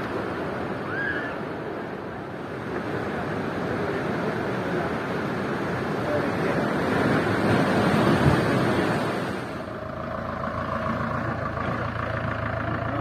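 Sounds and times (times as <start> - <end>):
steady engine hum: 0.0 - 13.0
motor vehicle passing: 7.2 - 13.0.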